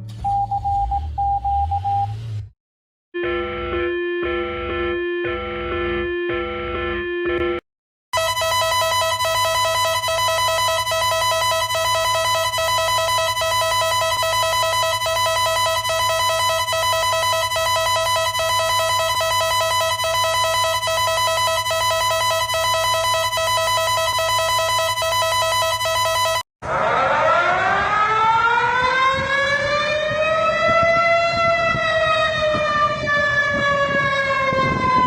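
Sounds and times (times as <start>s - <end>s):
emergency alert alarm tones: 3.2s - 7.6s, 8.2s - 35.0s.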